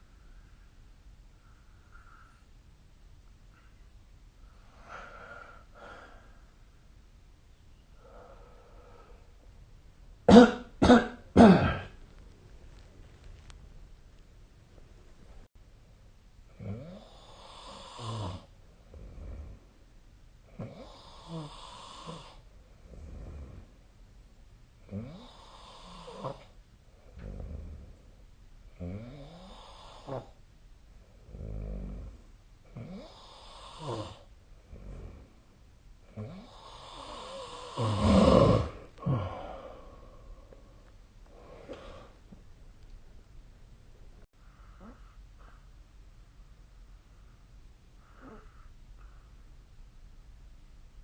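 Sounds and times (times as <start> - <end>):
quiet breath: 0.0 - 7.0, 7.7 - 9.6, 24.8 - 38.0, 38.6 - 42.6, 44.2 - 49.8
person snoring: 16.6 - 19.6, 20.6 - 23.7, 24.9 - 26.5, 31.3 - 35.3, 36.1 - 40.5.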